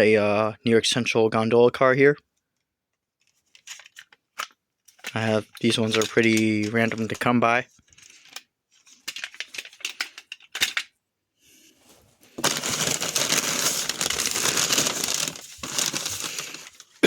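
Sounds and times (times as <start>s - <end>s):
wrapping paper crumpling: 5.2s - 7.3s, 11.8s - 17.0s
hard items clicking and knocking: 12.3s - 16.8s.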